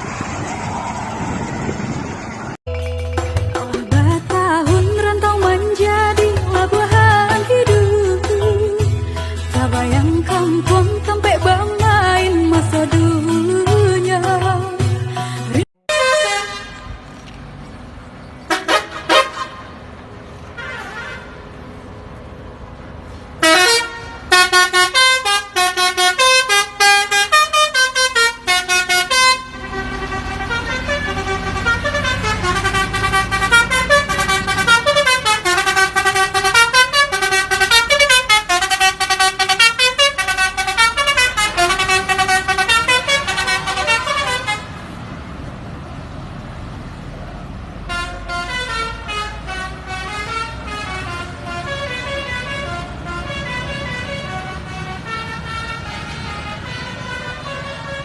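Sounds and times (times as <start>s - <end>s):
air horn chords: 15.2s - 17.0s, 18.5s - 19.8s, 23.4s - 44.7s, 47.9s - 58.0s.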